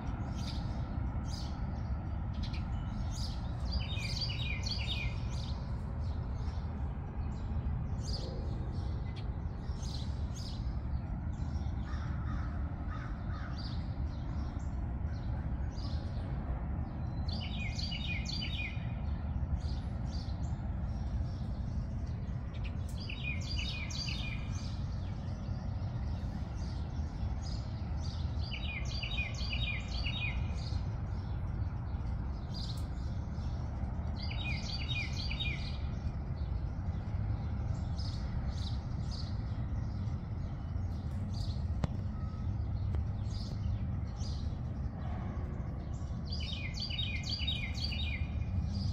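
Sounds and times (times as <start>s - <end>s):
songbirds chirping and singing: 0.0s - 48.9s
low rumble: 40.0s - 46.4s.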